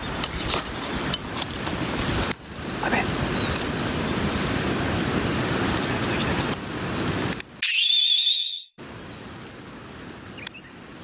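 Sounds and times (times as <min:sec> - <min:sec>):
high whistle-like tone: 0:07.6 - 0:08.8.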